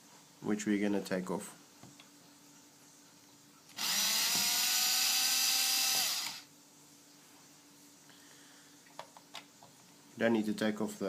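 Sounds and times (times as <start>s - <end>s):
power drill motor whine: 3.7s - 6.5s.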